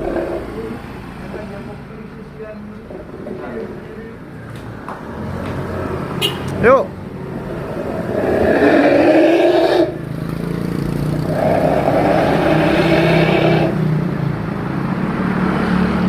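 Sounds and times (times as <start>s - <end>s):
car engine revving: 0.0s - 1.8s, 7.0s - 14.0s.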